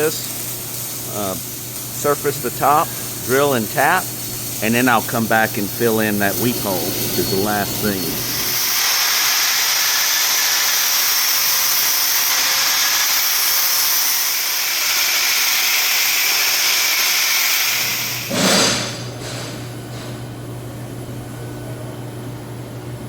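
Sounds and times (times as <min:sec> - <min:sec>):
grinder grinding metal: 0:00.0 - 0:19.6.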